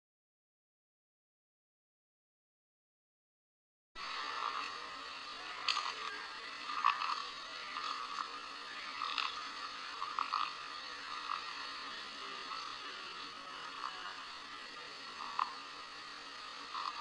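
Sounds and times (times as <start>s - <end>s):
steady hiss: 4.0s - 17.0s
sharp clicks and crackles: 5.6s - 8.3s.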